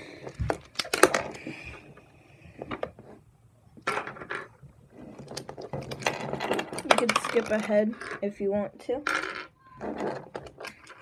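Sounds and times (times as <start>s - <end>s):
plastic puzzle pieces clicking: 5.2s - 8.2s.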